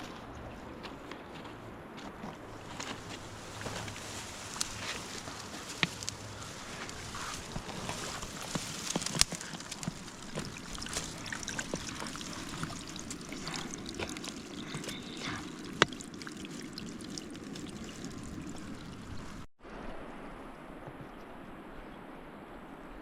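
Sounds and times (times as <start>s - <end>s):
river water trickling: 2.5s - 19.5s.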